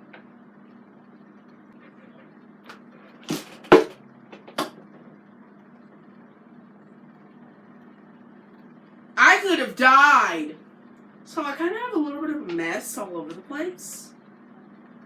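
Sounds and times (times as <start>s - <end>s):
sharp knocks and clatters: 3.2s - 4.8s.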